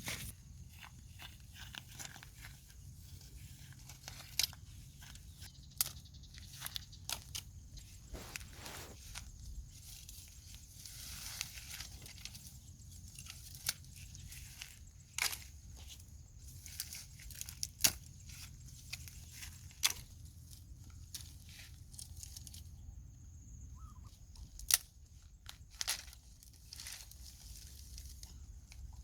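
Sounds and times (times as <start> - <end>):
tearing and rustling: 7.1 - 15.5.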